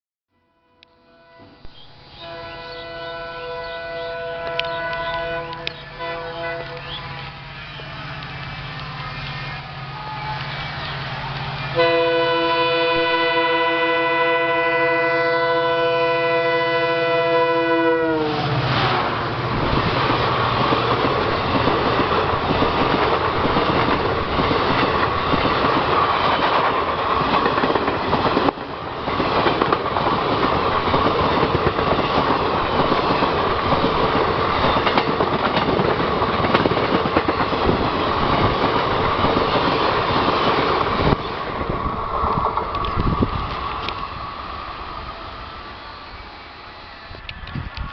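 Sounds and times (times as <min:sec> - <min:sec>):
locomotive air horn blast: 0:00.5 - 0:01.6, 0:02.2 - 0:07.4, 0:11.7 - 0:19.2
train wheels rumbling on rails: 0:01.6 - 0:47.9.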